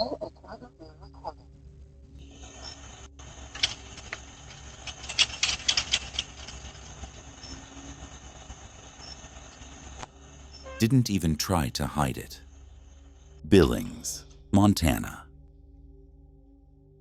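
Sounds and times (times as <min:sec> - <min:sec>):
bicycle clicks and rattles: 0:03.4 - 0:07.2.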